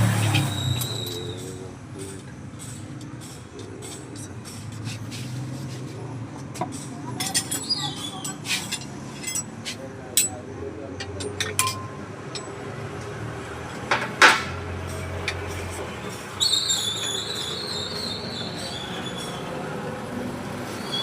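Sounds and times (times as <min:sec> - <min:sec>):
high squeak: 0:00.2 - 0:01.6, 0:07.2 - 0:09.4, 0:16.4 - 0:19.7, 0:20.6 - 0:21.0
metal parts and tools clinking: 0:06.6 - 0:10.4, 0:11.0 - 0:15.6.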